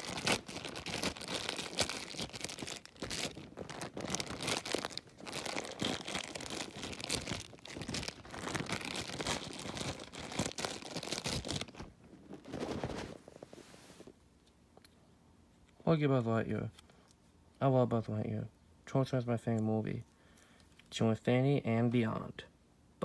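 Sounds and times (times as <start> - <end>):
plastic wrapper crinkling and tearing: 0.0 - 13.2.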